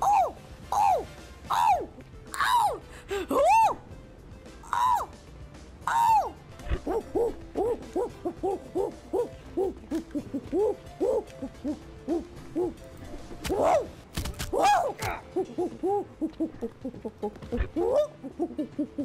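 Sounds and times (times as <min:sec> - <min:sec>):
woman's high cries: 0:00.0 - 0:03.8
woman imitating gorilla hoots: 0:05.9 - 0:12.8, 0:14.6 - 0:19.0.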